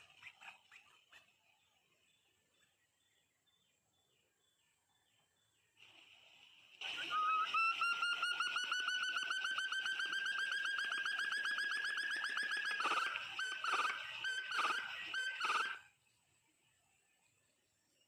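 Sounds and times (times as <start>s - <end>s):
harsh quail notes: 6.8s - 15.9s
quail piping calls: 6.9s - 15.9s.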